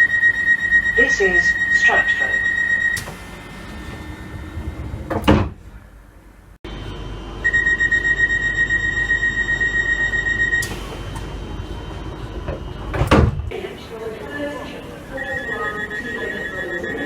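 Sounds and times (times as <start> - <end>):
high door-warning tone: 0.0 - 5.6, 7.4 - 11.3, 14.8 - 17.0
low rumble: 0.8 - 7.5
train doors closing thud: 2.9 - 5.8, 10.6 - 11.3, 12.4 - 13.5.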